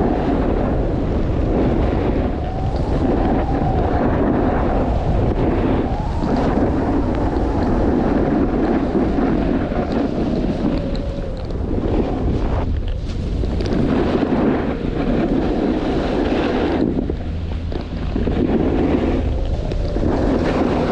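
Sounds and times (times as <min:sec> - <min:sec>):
wind buffeting microphone: 0:00.0 - 0:20.9.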